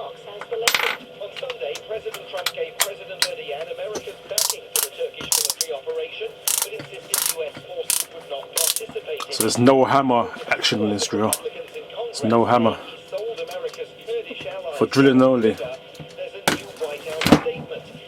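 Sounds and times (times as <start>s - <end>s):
power drill ratcheting clicks: 6.5s - 8.8s.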